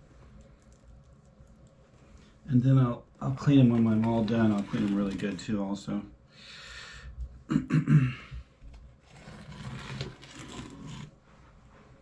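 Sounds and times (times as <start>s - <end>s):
cloth scraping along rails: 3.4s - 5.4s, 9.0s - 12.0s.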